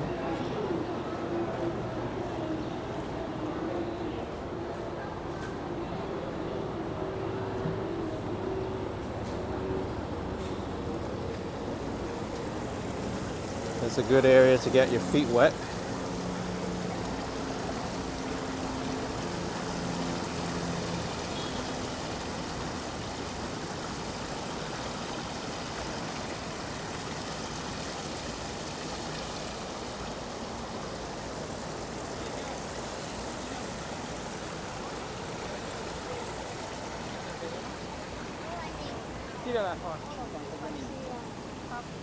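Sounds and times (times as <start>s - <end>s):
shallow water splashing: 10.4s - 40.2s.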